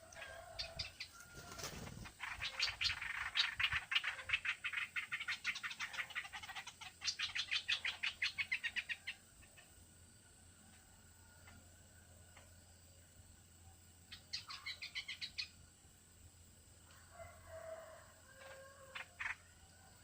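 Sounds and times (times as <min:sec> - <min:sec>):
rustle: 0:00.0 - 0:06.5, 0:09.1 - 0:20.0
bird chattering call: 0:02.1 - 0:09.6.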